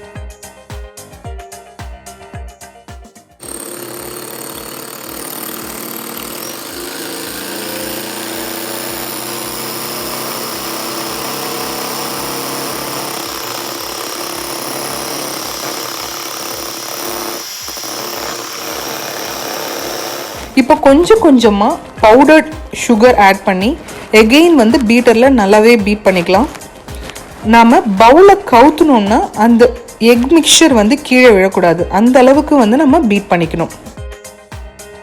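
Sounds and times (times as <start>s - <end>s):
electric beater whipping: 3.4s - 20.6s.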